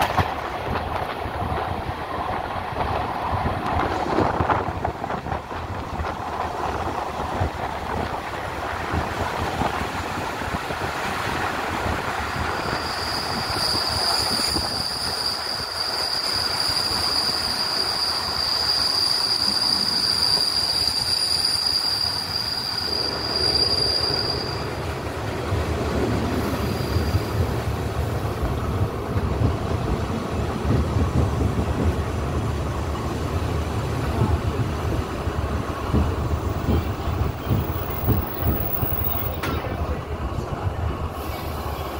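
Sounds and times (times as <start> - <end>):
train rumbling on rails: 0.0 - 41.9
high wheel squeal: 12.4 - 24.8.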